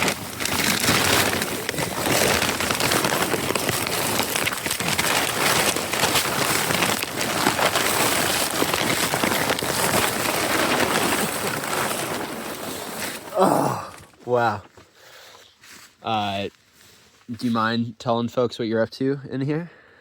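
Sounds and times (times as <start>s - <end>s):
plastic sheeting crinkling: 0.0s - 14.7s.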